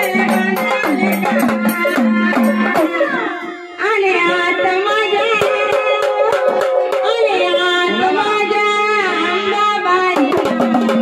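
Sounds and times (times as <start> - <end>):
hand drum strokes: 0.0 - 3.7
woman singing devotional song: 0.0 - 11.0.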